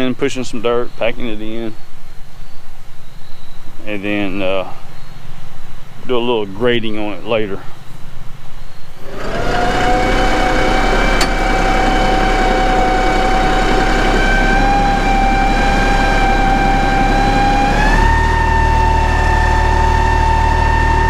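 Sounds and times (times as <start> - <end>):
steady whine: 8.9 - 21.0
tractor diesel engine under load: 9.0 - 21.0.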